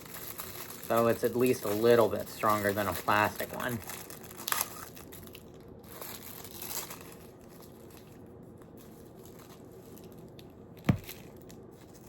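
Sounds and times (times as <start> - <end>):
packaging rustling: 0.0 - 12.0.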